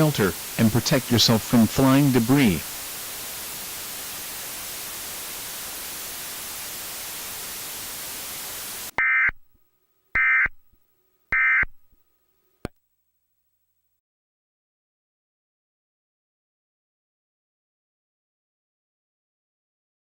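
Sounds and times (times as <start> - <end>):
static hiss: 0.0 - 9.1.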